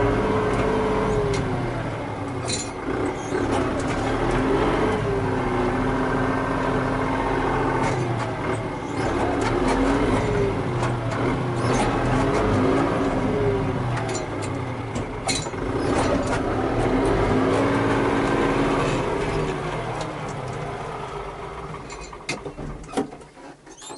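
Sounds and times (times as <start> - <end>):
tractor diesel engine revving: 0.0 - 23.9
metal clanks and knocks: 2.3 - 4.5, 7.8 - 20.7, 21.7 - 23.9.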